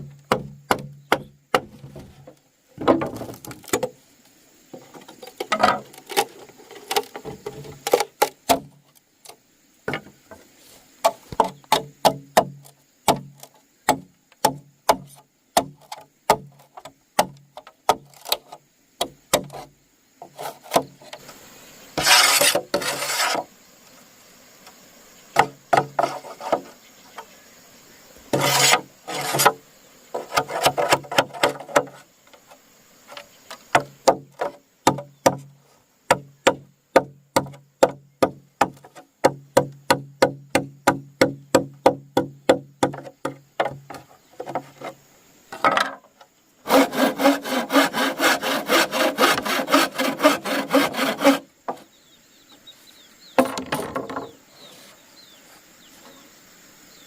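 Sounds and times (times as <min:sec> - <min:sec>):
tool striking wood: 0:00.0 - 0:03.9, 0:06.9 - 0:08.8, 0:11.0 - 0:16.6, 0:20.3 - 0:21.0, 0:25.4 - 0:26.7, 0:30.2 - 0:32.0, 0:33.6 - 0:35.5, 0:36.1 - 0:44.9, 0:53.4 - 0:54.3
rasping scrapes on wood: 0:19.5 - 0:21.1, 0:22.0 - 0:23.5, 0:25.8 - 0:26.8, 0:28.3 - 0:32.0, 0:46.7 - 0:51.8.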